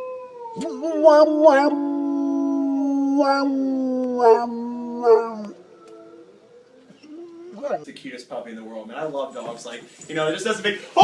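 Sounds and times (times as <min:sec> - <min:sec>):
dog howling: 0:00.0 - 0:07.8.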